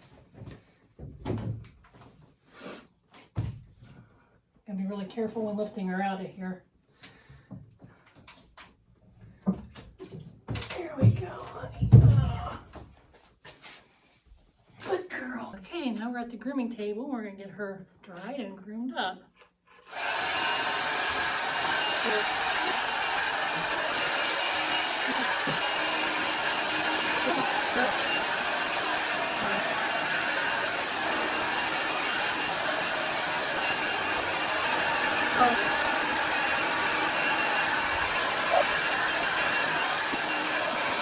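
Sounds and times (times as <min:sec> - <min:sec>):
blow dryer blowing: 0:19.8 - 0:41.0.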